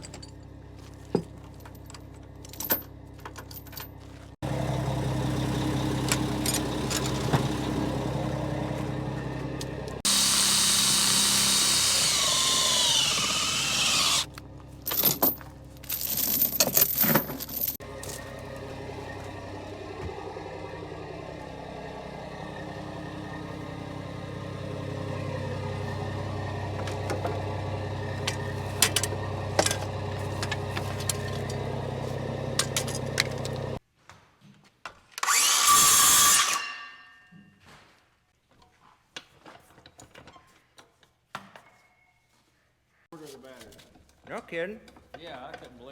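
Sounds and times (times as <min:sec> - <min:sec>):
diesel engine running: 0:00.0 - 0:33.8.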